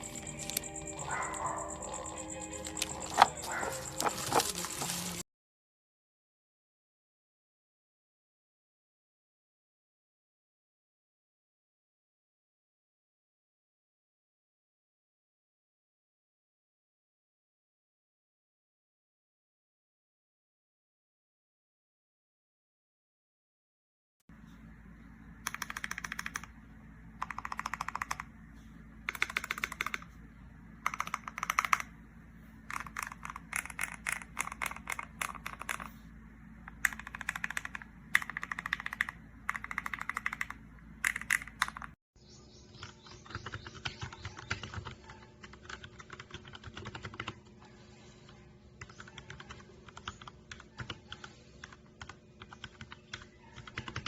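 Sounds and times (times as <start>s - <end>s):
mechanical keyboard typing: 0.0s - 5.2s, 25.4s - 26.6s, 27.2s - 28.3s, 29.0s - 30.2s, 30.8s - 32.0s, 32.6s - 36.0s, 36.7s - 42.0s, 42.8s - 47.5s, 48.8s - 54.0s.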